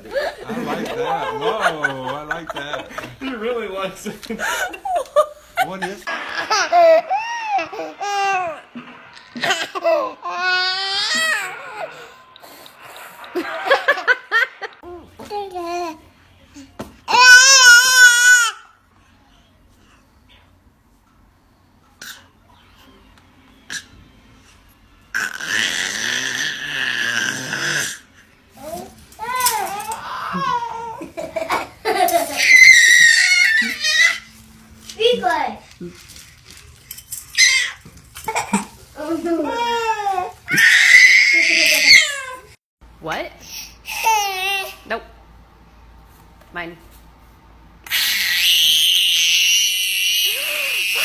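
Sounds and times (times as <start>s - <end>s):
baby crying: 6.5s - 8.7s, 9.4s - 12.2s, 17.1s - 18.7s, 25.2s - 28.0s, 29.2s - 31.6s, 32.2s - 34.3s, 37.4s - 42.6s, 47.9s - 51.0s
child squealing and laughing: 32.1s - 34.3s, 37.4s - 37.8s, 40.5s - 42.4s, 47.9s - 51.0s
child shrieking high-pitched: 40.5s - 42.4s, 47.9s - 51.0s.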